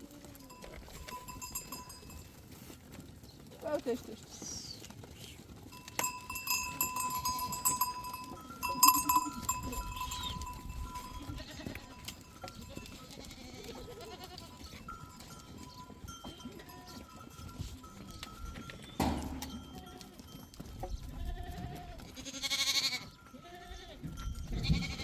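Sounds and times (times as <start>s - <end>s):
sheep bells clanking: 0.0s - 25.0s
sheep bleating: 6.0s - 17.2s, 19.5s - 20.2s, 21.0s - 25.0s.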